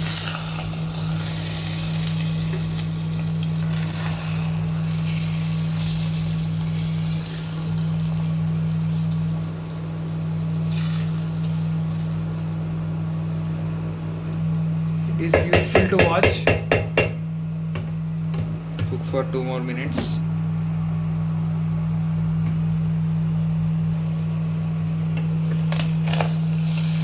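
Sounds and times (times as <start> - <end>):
eggs sizzling in a frying pan: 0.0 - 15.7, 23.9 - 27.0
steady low hum: 0.0 - 27.0.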